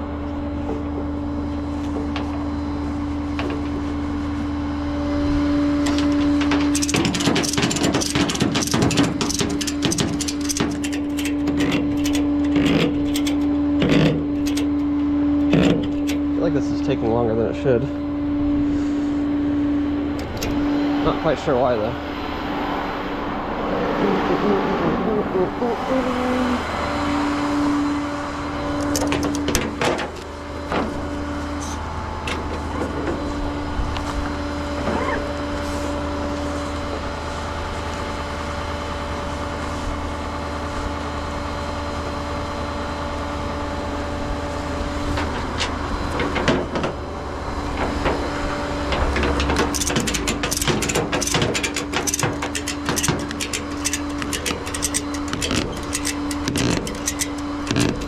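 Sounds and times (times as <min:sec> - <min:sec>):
tow truck engine whining: 0:00.0 - 0:58.0
clicks and knocks: 0:05.9 - 0:16.3, 0:28.8 - 0:30.9, 0:48.9 - 0:58.0.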